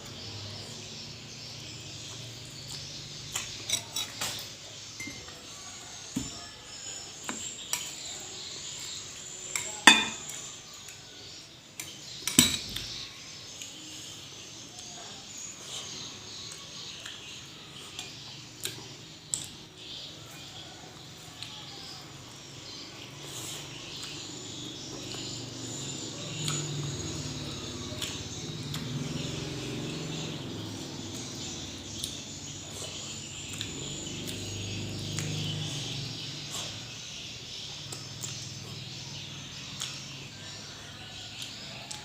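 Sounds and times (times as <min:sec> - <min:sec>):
cutlery clinking on plate: 0:09.6 - 0:10.3.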